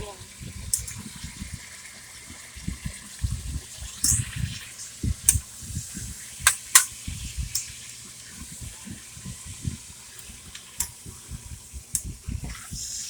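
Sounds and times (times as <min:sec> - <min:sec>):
food sizzling in a pot: 0:00.0 - 0:13.0
utensil clicking against pot: 0:06.4 - 0:06.9.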